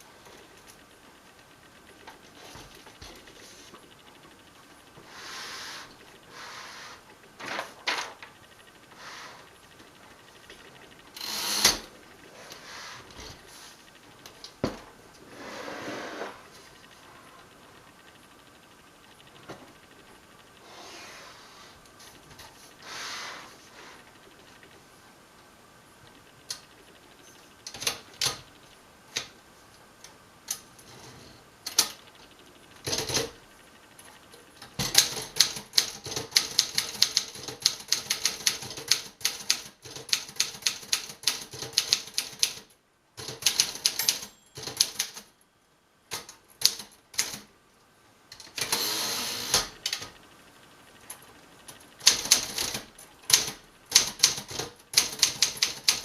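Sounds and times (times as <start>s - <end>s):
manual typewriter typing: 10.4s - 11.9s, 27.6s - 28.5s, 32.8s - 33.4s, 34.6s - 45.3s, 46.1s - 47.5s, 51.7s - 56.0s
typewriter rasping: 11.2s - 11.9s, 43.2s - 45.2s, 52.0s - 56.0s.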